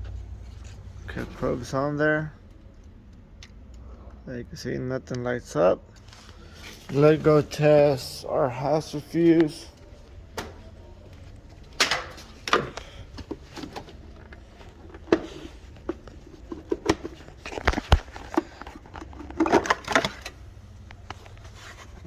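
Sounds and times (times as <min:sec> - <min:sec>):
low steady hum: 0:00.0 - 0:22.0
clicks and rattles of hands working: 0:08.6 - 0:22.0.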